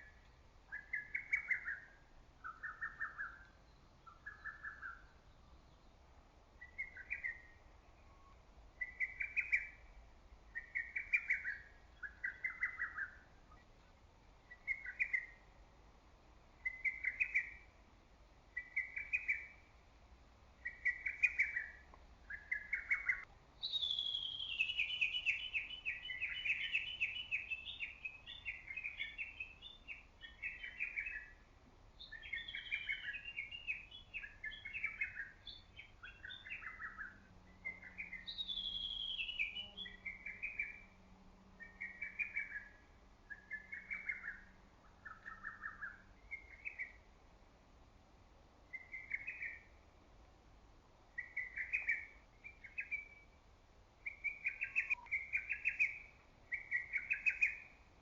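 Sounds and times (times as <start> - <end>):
cuckoo calling: 20.6 - 31.4, 32.0 - 40.9, 54.0 - 57.7.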